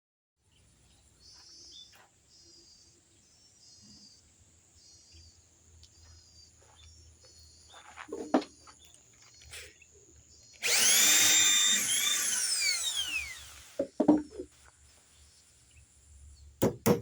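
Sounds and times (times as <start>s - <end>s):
small bird chirping: 0.4s - 13.5s.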